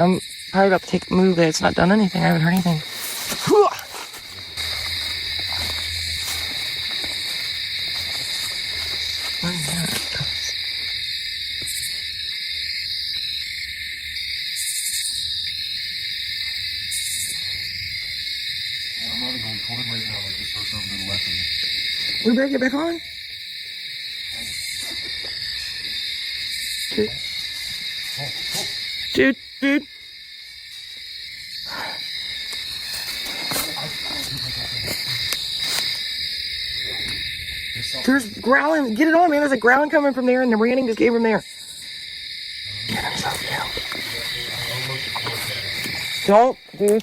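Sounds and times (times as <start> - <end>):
insect trilling drone: 0.0 - 47.0
rustling: 2.8 - 11.0, 32.3 - 37.3.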